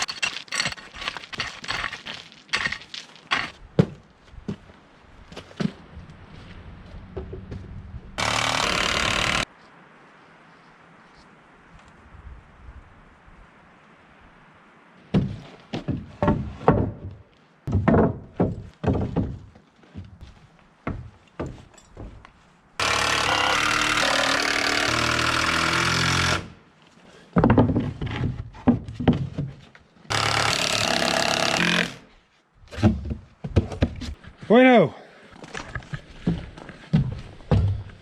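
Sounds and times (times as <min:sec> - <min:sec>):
power tool running: 0:08.2 - 0:09.4, 0:22.8 - 0:26.5, 0:30.1 - 0:32.0.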